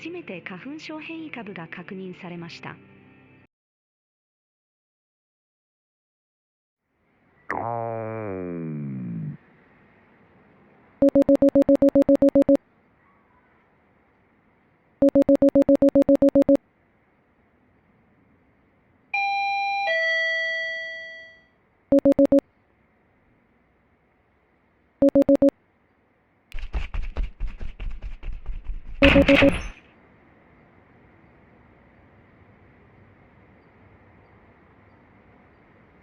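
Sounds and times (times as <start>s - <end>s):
intercom trilling ring: 11.0s - 12.6s, 15.0s - 16.6s, 21.9s - 22.4s, 29.0s - 29.6s.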